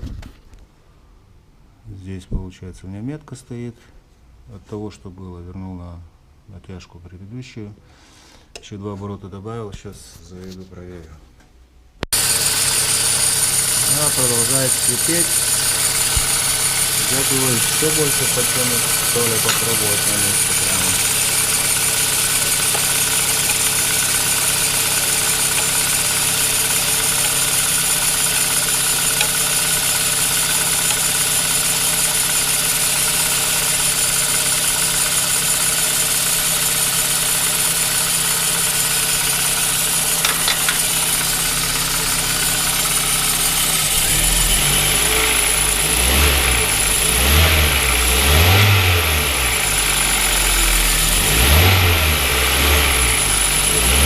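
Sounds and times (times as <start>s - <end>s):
car engine idling: 12.1s - 54.0s.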